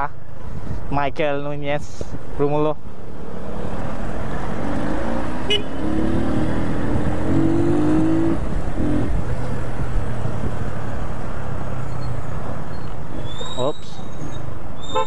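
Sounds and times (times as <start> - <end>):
wind and road noise: 0.0 - 15.0
flat tones from traffic: 5.2 - 8.5, 11.6 - 15.0.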